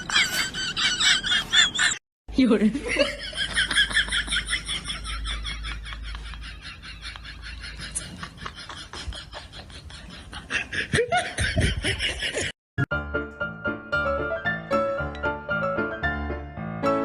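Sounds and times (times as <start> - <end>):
person laughing: 0.0 - 2.0, 2.8 - 12.5
piano music: 12.9 - 17.0.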